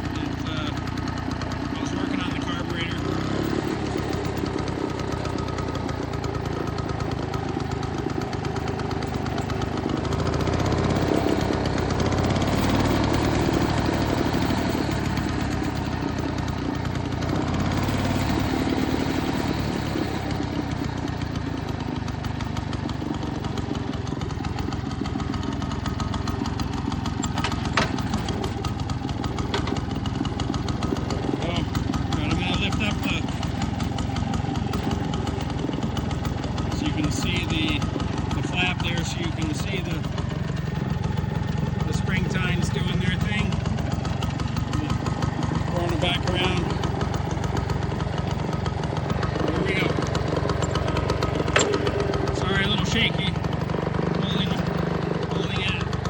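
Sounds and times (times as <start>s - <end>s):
rototiller engine running: 0.0s - 56.0s.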